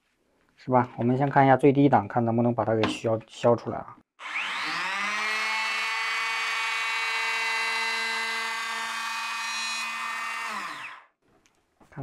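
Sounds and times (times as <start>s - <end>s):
electric planer whining: 4.2s - 11.1s.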